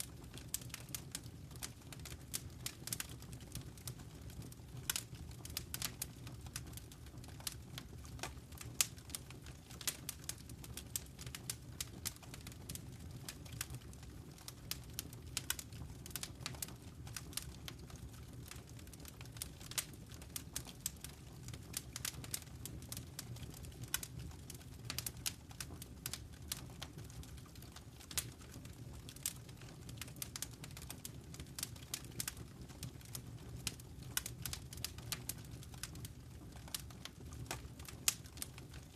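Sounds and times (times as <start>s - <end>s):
low rumble of burning: 0.0s - 38.9s
wood fire crackling: 0.0s - 38.9s.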